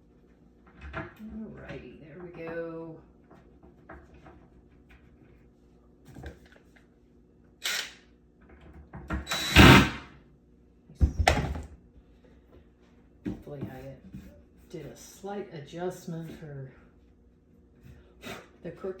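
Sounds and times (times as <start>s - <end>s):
impact screwdriver driving screws: 7.6s - 8.0s, 9.2s - 10.0s.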